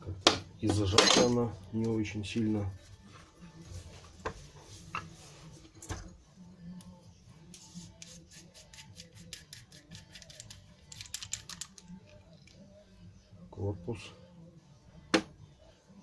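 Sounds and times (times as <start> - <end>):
metal tools clicking: 10.2 - 12.6.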